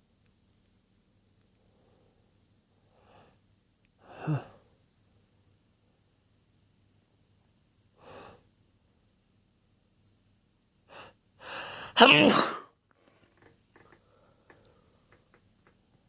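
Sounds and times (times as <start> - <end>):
man sneezing: 4.1 - 4.6, 11.8 - 12.8
short breaths: 10.9 - 12.0.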